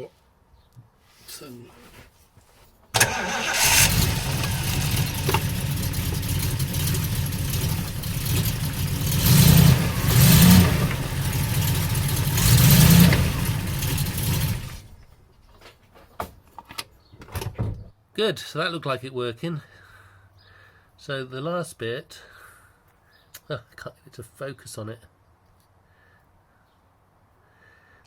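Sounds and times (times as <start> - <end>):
car engine starting and running: 3.0 - 15.2.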